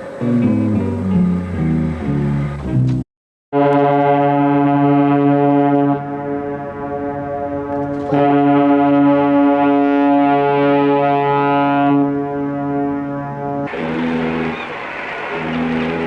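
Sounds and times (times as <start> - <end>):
ship's horn blast: 3.5 - 16.0.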